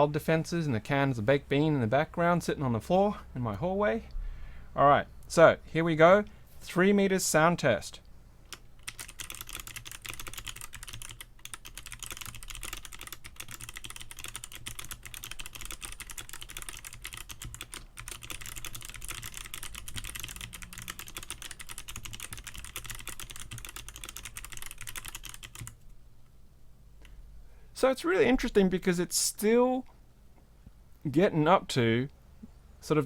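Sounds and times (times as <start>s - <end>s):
mechanical keyboard typing: 8.5s - 25.8s.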